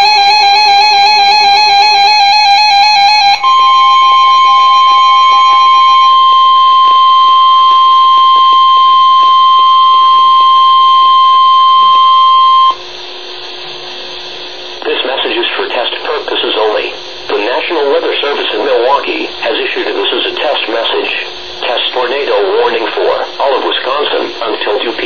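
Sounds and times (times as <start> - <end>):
steady loud alert tone: 0.0 - 12.8.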